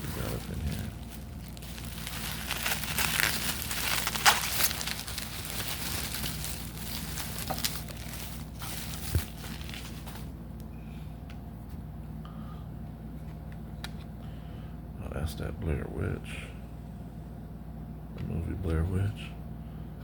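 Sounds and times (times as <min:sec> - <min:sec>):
plastic packaging crinkling: 0:00.0 - 0:10.4.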